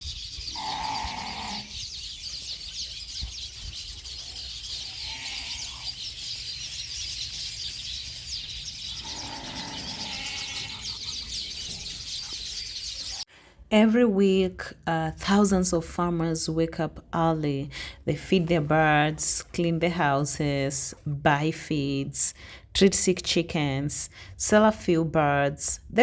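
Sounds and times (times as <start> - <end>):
hen calling: 0.0 - 13.2
chicks cheeping: 0.0 - 13.3.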